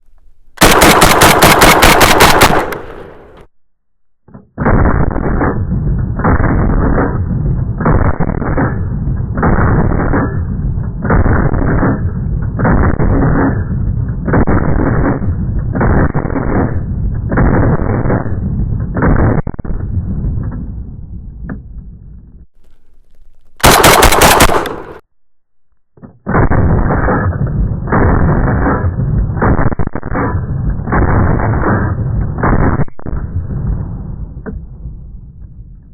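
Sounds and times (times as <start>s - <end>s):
dull evenly spaced booms: 0.0s - 35.9s
rapid shotgun shots: 0.6s - 3.5s, 11.0s - 13.6s, 23.6s - 25.0s, 26.3s - 33.2s.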